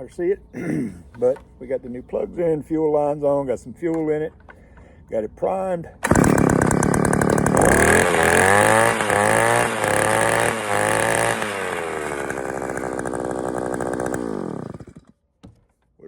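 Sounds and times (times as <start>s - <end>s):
auger engine revving: 6.0s - 15.1s.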